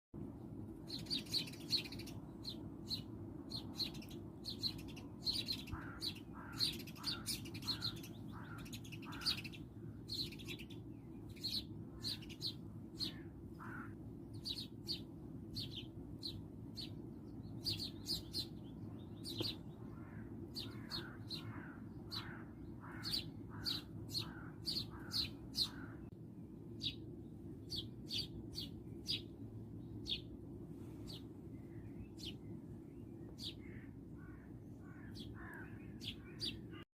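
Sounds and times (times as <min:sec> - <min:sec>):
low background rumble: 0:00.2 - 0:36.8
bird high chirps: 0:00.8 - 0:26.1, 0:27.6 - 0:29.3.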